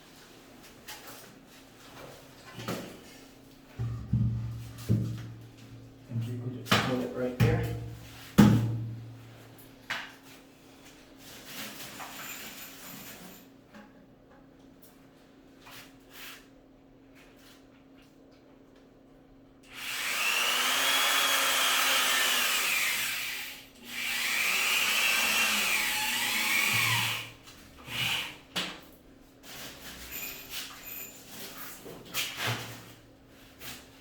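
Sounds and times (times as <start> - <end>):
power drill whining: 19.7 - 28.4.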